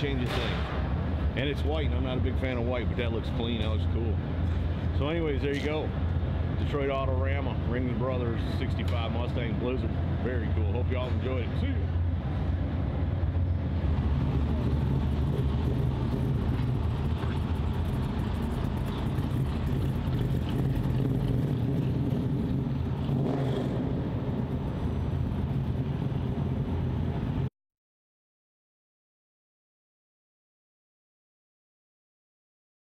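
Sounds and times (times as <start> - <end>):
car engine running: 12.0 - 23.4.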